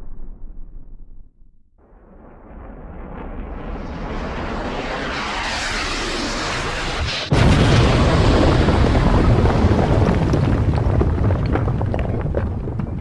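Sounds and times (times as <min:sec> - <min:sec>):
heavy rumble: 0:00.0 - 0:13.0
rush of noise: 0:01.8 - 0:10.0
explosion blast: 0:01.8 - 0:12.8.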